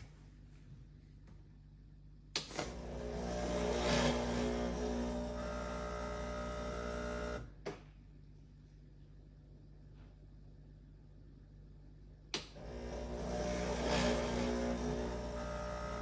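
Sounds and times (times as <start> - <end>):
pump humming: 2.7 - 7.5, 12.6 - 16.0.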